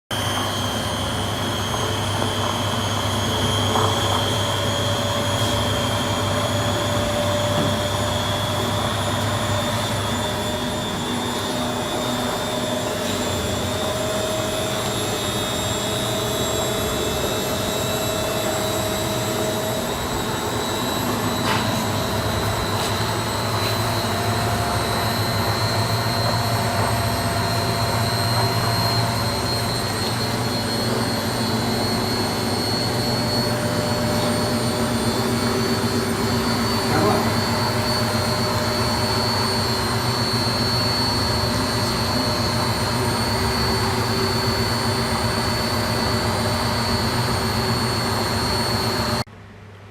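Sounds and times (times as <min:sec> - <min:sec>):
rising whine: 0:00.1 - 0:49.3
washing machine spinning: 0:00.1 - 0:49.3.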